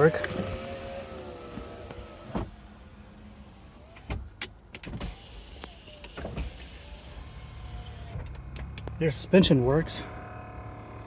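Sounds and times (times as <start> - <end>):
power window motor whirring: 0.0 - 8.8.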